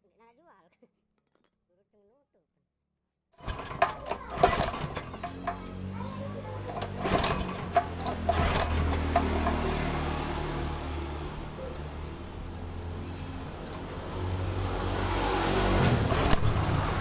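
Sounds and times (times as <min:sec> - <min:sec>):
sharp clicks and knocks: 0:03.4 - 0:06.0, 0:06.6 - 0:10.1, 0:15.7 - 0:17.0
small engine running: 0:03.4 - 0:17.0.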